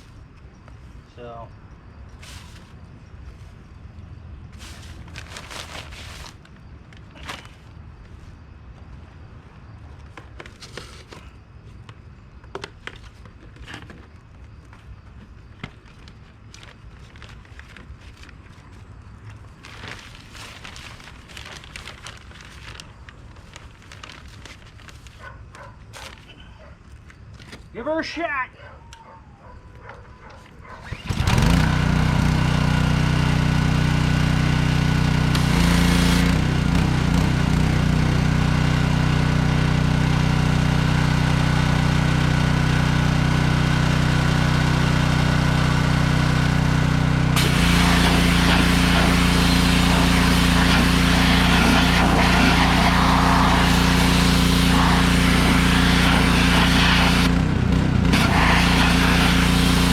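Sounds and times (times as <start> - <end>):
pressure washer engine running: 30.8 - 59.9
spray hissing: 47.4 - 57.3, 58.1 - 59.9.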